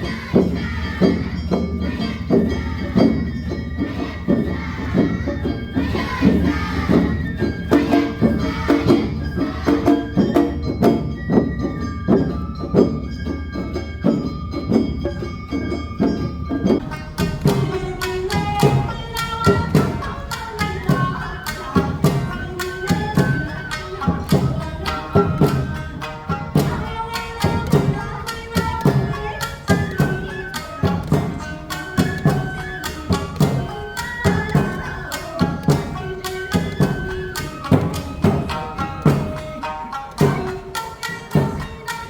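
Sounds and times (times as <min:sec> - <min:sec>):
drums: 0:00.0 - 0:42.0.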